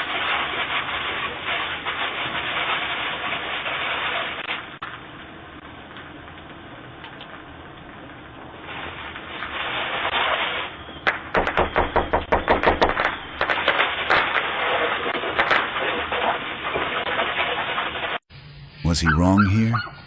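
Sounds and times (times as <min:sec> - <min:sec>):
pounding knocks on a door: 0:11.4 - 0:12.9
microphone hiss: 0:18.8 - 0:19.8.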